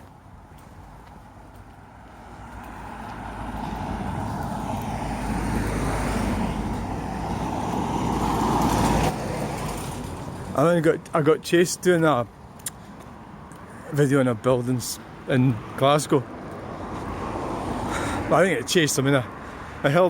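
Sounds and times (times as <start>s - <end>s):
vehicle driving past: 2.2s - 10.1s.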